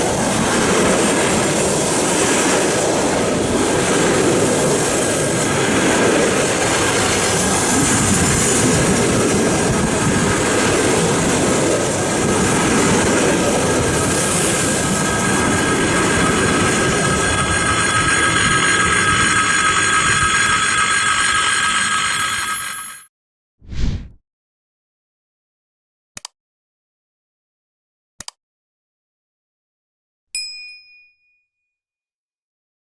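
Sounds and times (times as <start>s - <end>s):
train wheels rumbling on rails: 0.0s - 22.9s.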